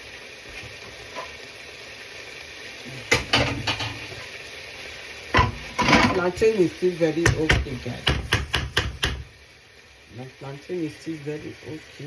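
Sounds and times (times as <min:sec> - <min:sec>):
plantain sizzling in oil: 0:00.0 - 0:12.0
pan contents clattering: 0:00.6 - 0:01.4, 0:03.0 - 0:04.3, 0:05.3 - 0:06.5.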